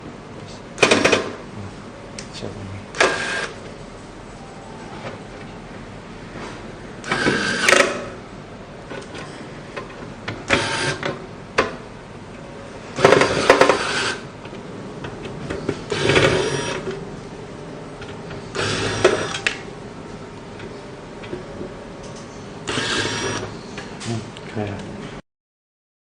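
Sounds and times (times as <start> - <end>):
electric screwdriver motor: 3.0 - 3.5, 7.1 - 7.8, 10.5 - 11.0, 13.2 - 14.2, 16.0 - 16.8, 18.6 - 19.4, 22.7 - 23.4.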